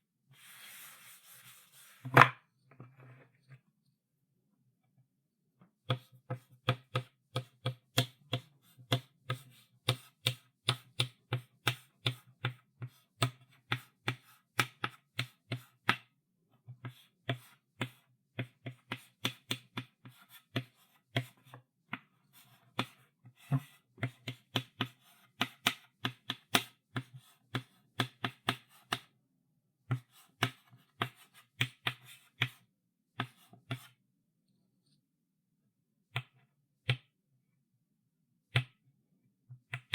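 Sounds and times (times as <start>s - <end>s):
chalk tapping and scratching: 0.4s - 2.2s, 5.9s - 16.1s, 16.8s - 29.1s, 29.9s - 32.6s, 33.2s - 34.0s.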